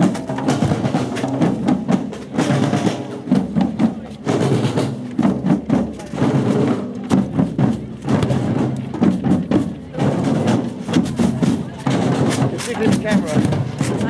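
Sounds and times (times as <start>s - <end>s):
crowd voices: 0.0s - 14.0s
drum band playing: 0.0s - 14.0s
music: 0.0s - 14.0s.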